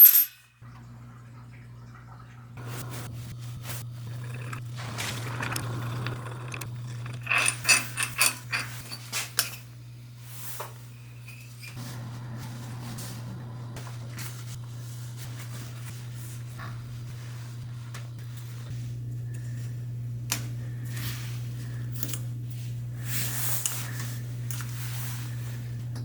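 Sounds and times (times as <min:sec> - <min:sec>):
metallic clicks and clinks of tools: 0:00.0 - 0:00.4
steady low hum: 0:02.5 - 0:26.0.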